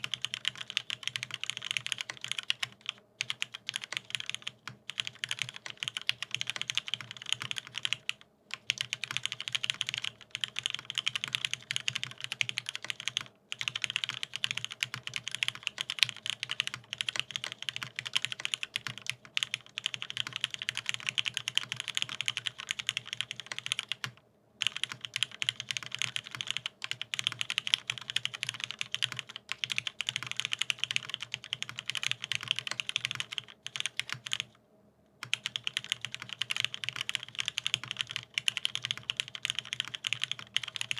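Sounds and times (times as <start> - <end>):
mechanical keyboard typing: 0.0 - 34.6, 35.2 - 40.9.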